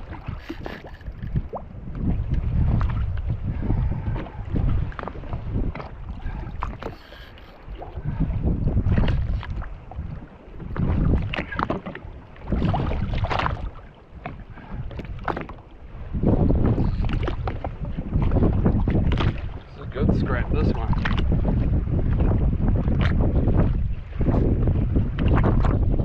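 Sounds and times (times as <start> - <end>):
water sloshing against hull: 0.0 - 26.0
wind buffeting microphone: 0.0 - 26.0.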